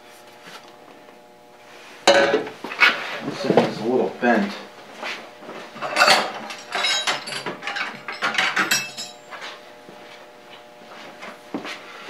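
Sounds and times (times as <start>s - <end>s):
sheet metal clinking and rattling: 5.8s - 9.3s.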